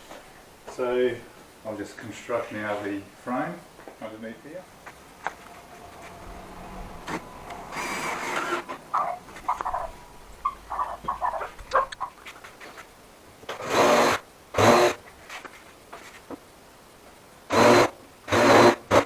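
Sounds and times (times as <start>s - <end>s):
power driver driving screws: 13.5s - 15.0s, 17.5s - 19.0s.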